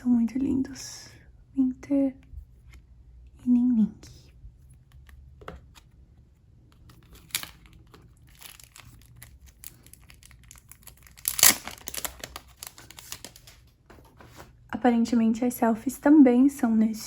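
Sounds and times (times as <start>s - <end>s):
plastic packaging crinkling and tearing: 6.7s - 13.8s.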